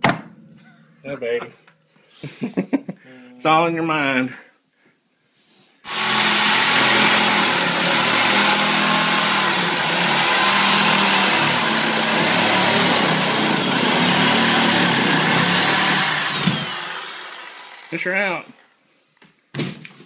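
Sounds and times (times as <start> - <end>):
power tool whining under load: 5.8 - 18.6.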